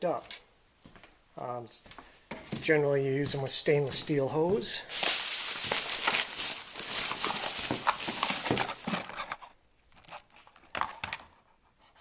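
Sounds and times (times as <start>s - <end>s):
tools knocking and rattling: 5.7s - 11.5s.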